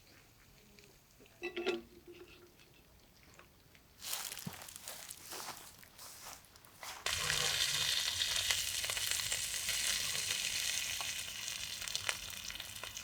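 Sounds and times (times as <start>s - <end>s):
food sizzling in a hot pan: 7.1s - 13.0s.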